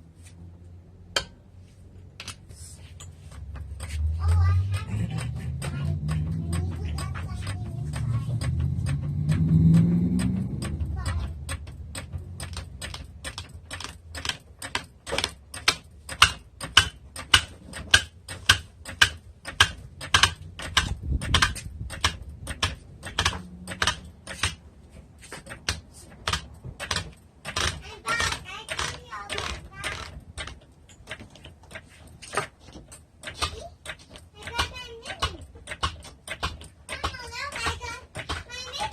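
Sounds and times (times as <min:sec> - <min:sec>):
low hum with rising tone: 0:00.0 - 0:14.1, 0:19.8 - 0:25.2
ratchet wrench clicking: 0:02.2 - 0:38.9.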